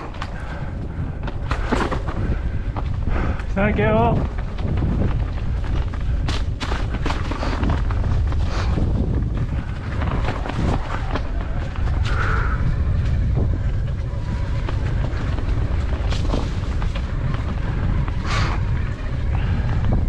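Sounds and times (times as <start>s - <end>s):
bike rattling over rocky trail: 0.0s - 20.0s
wind rushing over microphone: 0.0s - 20.0s.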